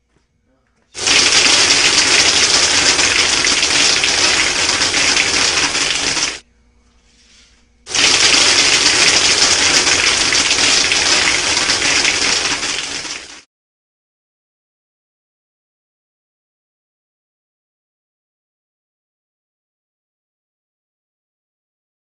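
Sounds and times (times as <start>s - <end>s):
rush of compressed air: 7.3s - 13.4s.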